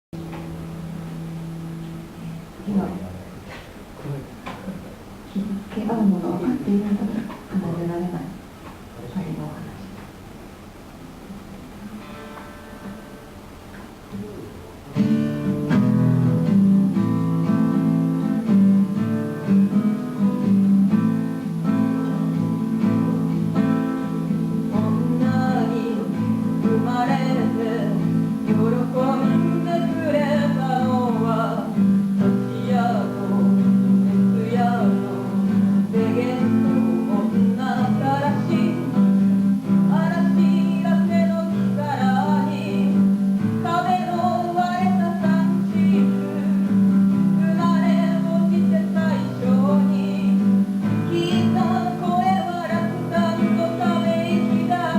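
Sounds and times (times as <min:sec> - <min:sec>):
acoustic guitar strumming: 0:00.2 - 0:03.6, 0:11.3 - 0:54.9
person singing: 0:24.6 - 0:54.9.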